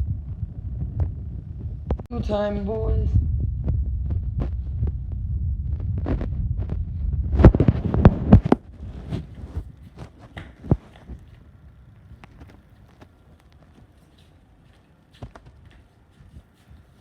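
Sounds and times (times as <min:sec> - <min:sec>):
low rumbling: 0:00.0 - 0:13.2.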